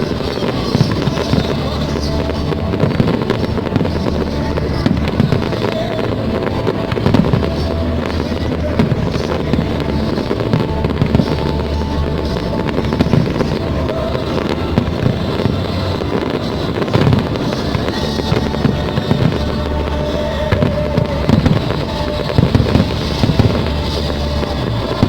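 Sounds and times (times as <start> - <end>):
fireworks bangs and crackle: 0.0 - 25.0
music playing: 0.0 - 25.0.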